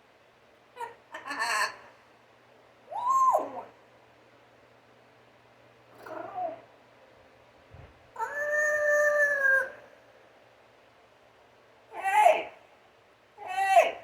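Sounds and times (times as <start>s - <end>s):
parrot calling: 0.8s - 2.0s.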